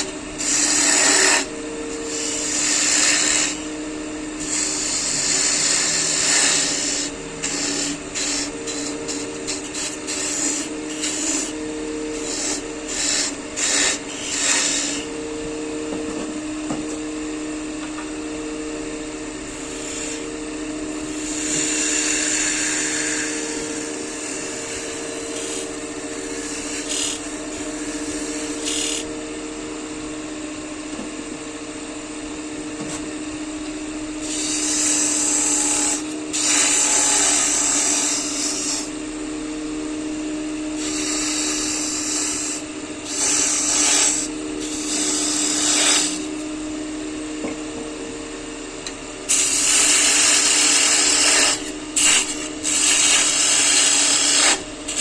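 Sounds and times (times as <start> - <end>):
tool scraping spinning wood: 0.0 - 3.8, 4.4 - 15.2, 21.0 - 29.1, 40.8 - 46.4, 49.3 - 55.0
wood lathe humming: 0.0 - 30.6, 31.6 - 55.0.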